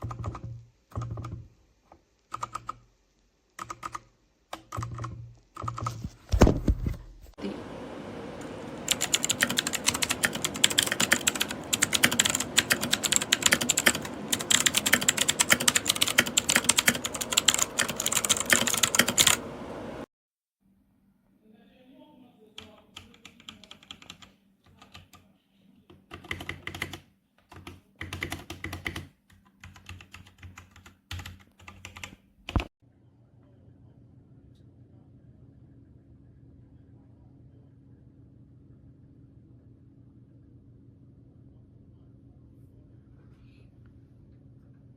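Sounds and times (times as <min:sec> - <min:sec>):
mechanical keyboard typing: 0:00.0 - 0:01.5, 0:02.3 - 0:02.9, 0:03.6 - 0:06.1, 0:08.8 - 0:19.4, 0:22.6 - 0:25.2, 0:25.9 - 0:32.7.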